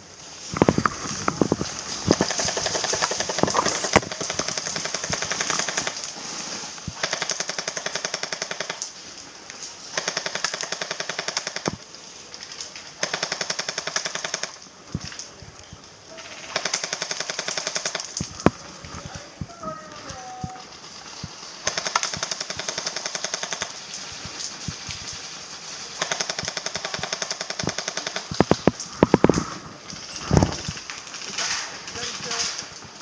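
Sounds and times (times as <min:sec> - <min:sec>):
airsoft guns firing bursts: 0:01.2 - 0:06.2, 0:07.0 - 0:09.0, 0:09.9 - 0:11.8, 0:13.0 - 0:14.6, 0:16.2 - 0:18.5, 0:21.5 - 0:23.9, 0:25.8 - 0:29.3.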